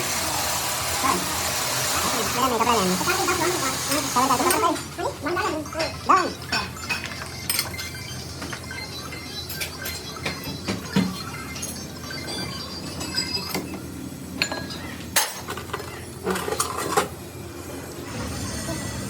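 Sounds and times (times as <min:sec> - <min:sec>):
hard objects clinking and knocking: 0:05.8 - 0:08.8.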